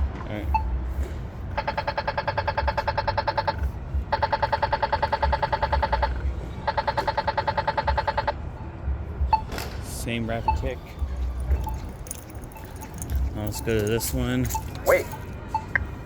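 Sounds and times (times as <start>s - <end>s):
low traffic rumble: 0.0s - 16.0s
rapid pedestrian signal ticks: 1.5s - 8.4s, 10.4s - 16.0s.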